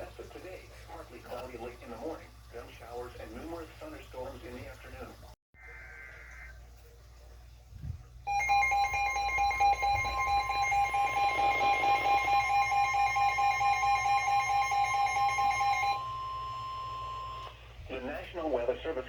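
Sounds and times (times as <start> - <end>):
loud two-tone alarm: 8.3 - 17.6.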